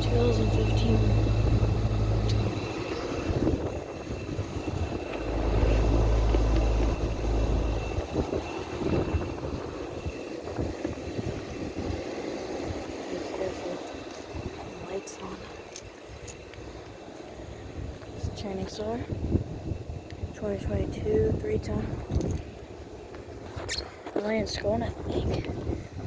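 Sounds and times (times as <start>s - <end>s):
low compressor hum: 0.0s - 15.7s
fan air rushing: 0.0s - 26.0s.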